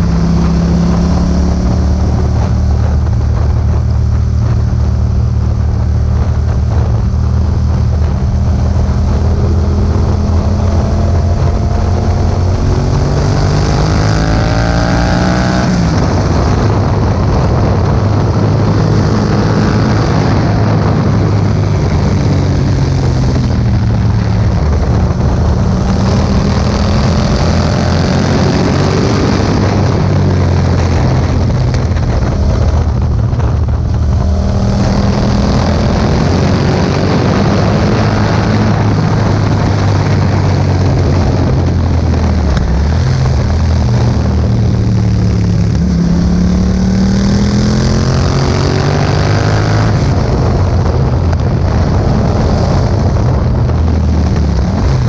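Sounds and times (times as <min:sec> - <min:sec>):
motorcycle engine running: 0:00.0 - 0:55.0
wind noise on microphone: 0:00.0 - 0:55.0.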